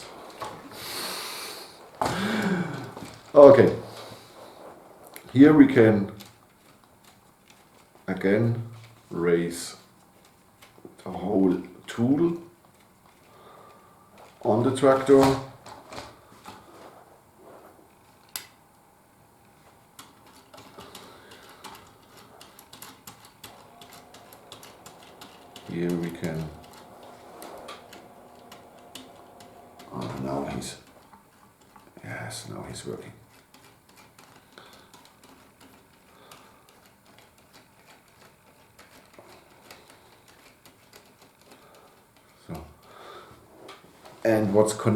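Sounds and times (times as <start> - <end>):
plastic building blocks clicking: 27.7 - 42.7.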